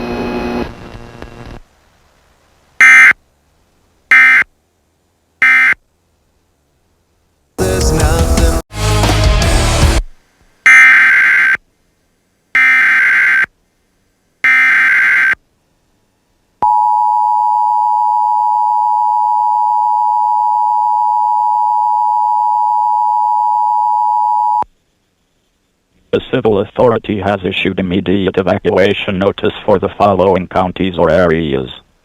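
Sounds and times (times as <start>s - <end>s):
data header bursts: 2.8s - 3.2s
music: 7.6s - 10.1s.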